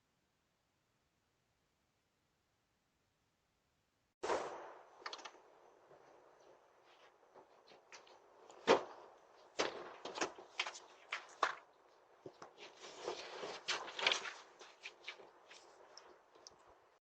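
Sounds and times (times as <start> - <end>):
rustling and clicks: 5.0 - 16.8.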